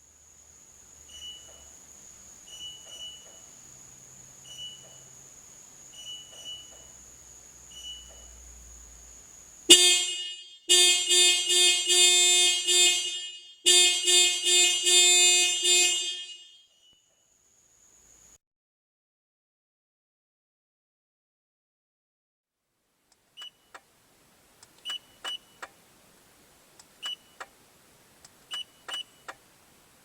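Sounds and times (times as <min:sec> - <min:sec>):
faint high whine: 0:00.0 - 0:10.7, 0:16.2 - 0:18.4
car horn honking: 0:09.7 - 0:16.8.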